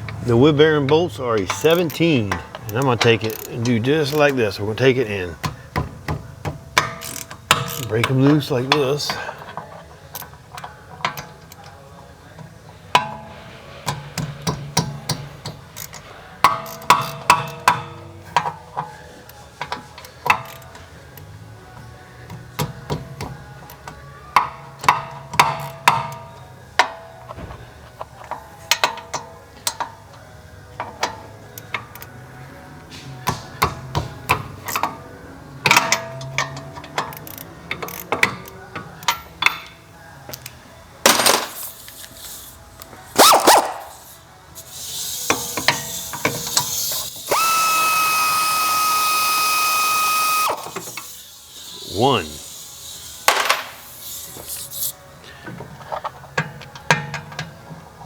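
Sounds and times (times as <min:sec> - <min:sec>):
metal tools clinking on hub: 0:00.0 - 0:27.4, 0:33.2 - 0:55.0
ratchet clicking: 0:01.4 - 0:04.4, 0:05.4 - 0:09.5, 0:13.9 - 0:19.0, 0:35.7 - 0:39.2, 0:43.2 - 0:55.0.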